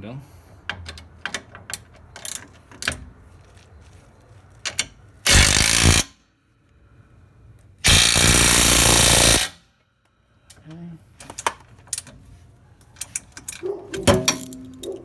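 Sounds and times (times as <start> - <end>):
impact wrench running bolt: 4.8 - 6.1, 7.8 - 9.6.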